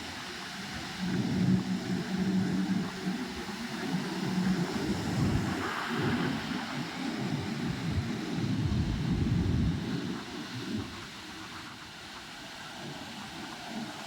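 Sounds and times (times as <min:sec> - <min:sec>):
wind buffeting microphone: 0:04.3 - 0:11.7.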